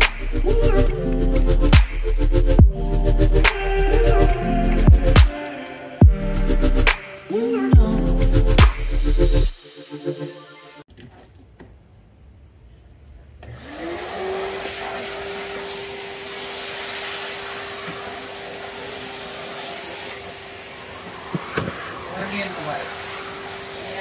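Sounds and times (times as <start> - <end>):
vacuum cleaner motor whine: 13.4 - 24.0.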